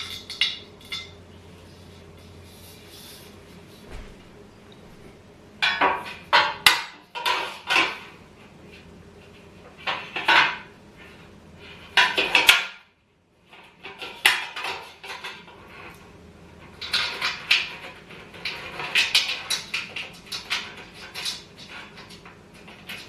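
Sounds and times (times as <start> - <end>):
parts and tools clattering: 0.0 - 1.2.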